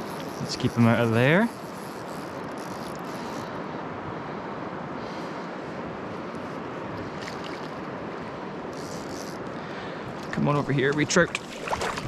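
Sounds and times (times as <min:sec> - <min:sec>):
river water rushing over stones: 0:10.7 - 0:12.0.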